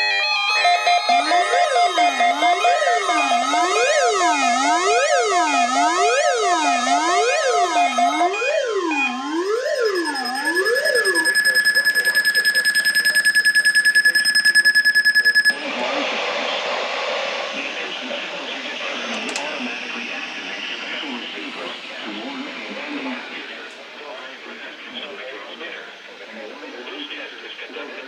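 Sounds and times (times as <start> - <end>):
steady high alarm tone: 0.0 - 16.1, 17.2 - 23.5
emergency alert siren sweeping: 0.0 - 23.5
fast pulsing high tone: 0.0 - 23.6.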